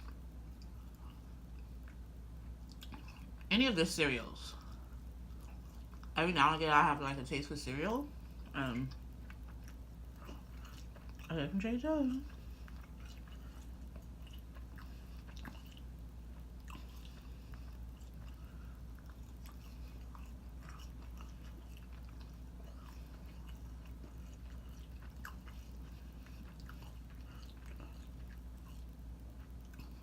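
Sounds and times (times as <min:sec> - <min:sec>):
person chewing food: 0:00.0 - 0:03.5, 0:04.6 - 0:06.2, 0:08.2 - 0:11.3, 0:12.1 - 0:30.0.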